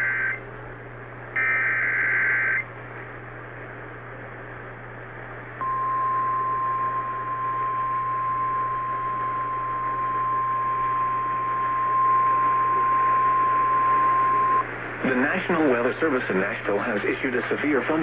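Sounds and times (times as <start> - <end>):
steady alarm tone: 0.0 - 0.4, 1.4 - 2.6, 5.6 - 14.6
radio hiss: 6.4 - 18.0.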